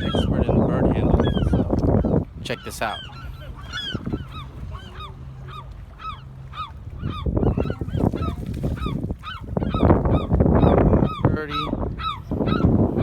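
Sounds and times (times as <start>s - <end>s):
birds honking calls: 0.0s - 13.0s.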